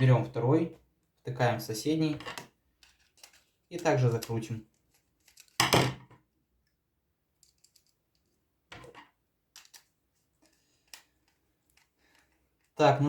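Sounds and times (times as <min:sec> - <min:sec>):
screwdriver clicks and scrapes: 0:09.6 - 0:12.3.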